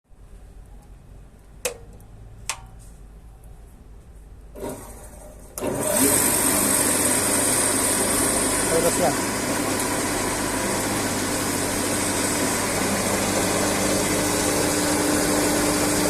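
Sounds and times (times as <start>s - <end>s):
drum sander motor whining: 5.6s - 16.0s.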